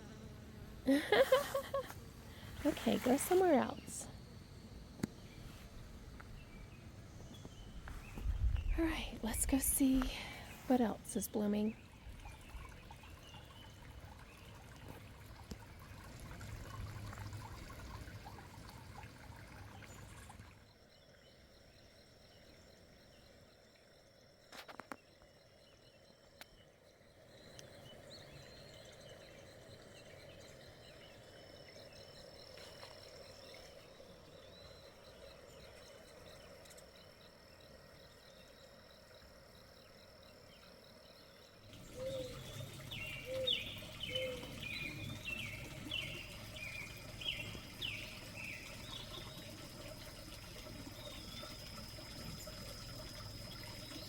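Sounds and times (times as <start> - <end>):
insect drone: 0.0 - 54.0
birds chirping: 41.7 - 54.0.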